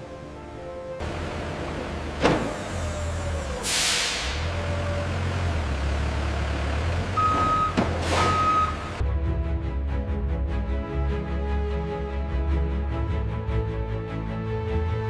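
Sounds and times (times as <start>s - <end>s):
industrial machinery rumbling: 1.0s - 9.0s
air hiss release: 3.6s - 4.5s.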